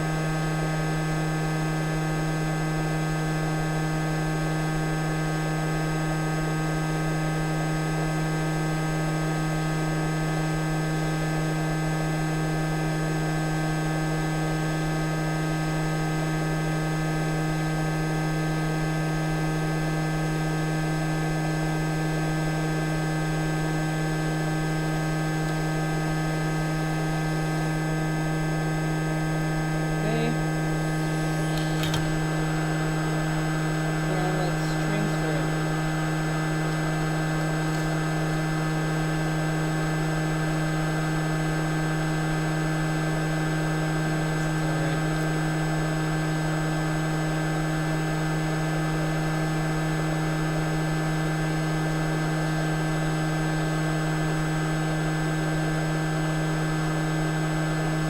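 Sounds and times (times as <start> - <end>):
hot air blower humming: 22.4 - 47.2.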